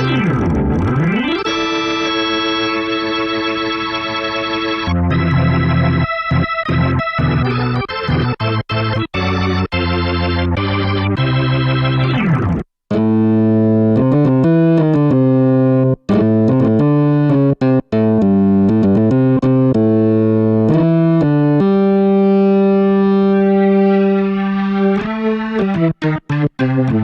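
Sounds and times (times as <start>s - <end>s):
keyboard playing a melody: 0.0s - 27.0s.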